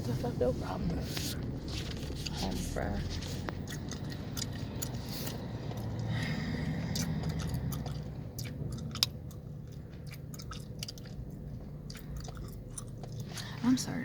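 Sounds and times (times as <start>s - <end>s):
car rumble: 0.0s - 14.0s
gum chewing smacks and clicks: 3.5s - 13.5s.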